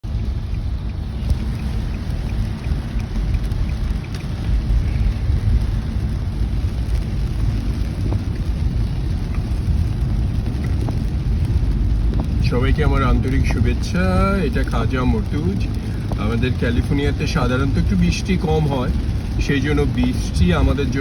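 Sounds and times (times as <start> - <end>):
car driving on wet road: 0.0 - 21.0
rain: 0.0 - 21.0
faint ticks: 0.3 - 6.2.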